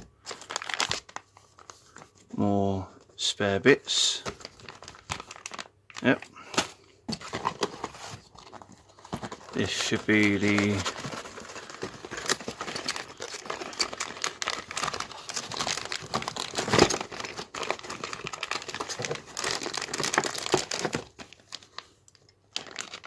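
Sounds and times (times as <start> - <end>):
plastic packaging crinkling: 0.0 - 3.2, 3.8 - 23.0.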